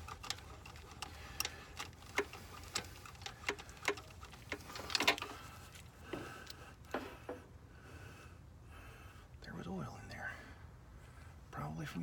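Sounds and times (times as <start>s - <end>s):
hand tools clicking and tapping: 0.0s - 7.4s.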